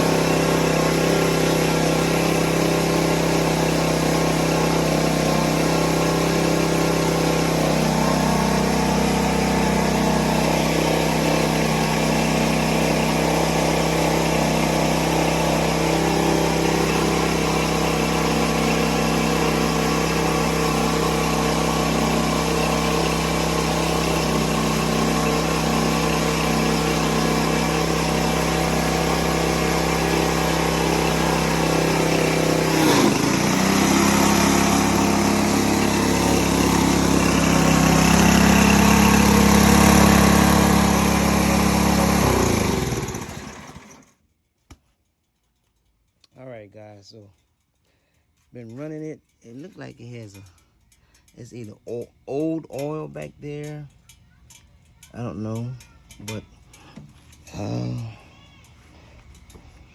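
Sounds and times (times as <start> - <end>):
pressure washer gas engine running: 0.0 - 44.2.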